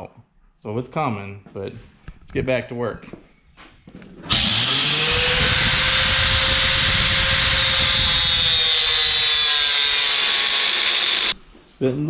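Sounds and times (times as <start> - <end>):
angle grinder cutting steel: 4.3 - 11.4.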